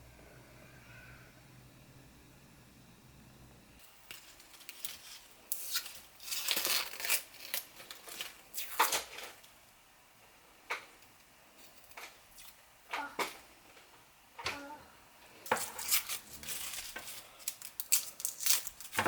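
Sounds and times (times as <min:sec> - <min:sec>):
thin material crinkling and tearing: 0:04.0 - 0:09.4, 0:15.5 - 0:19.0.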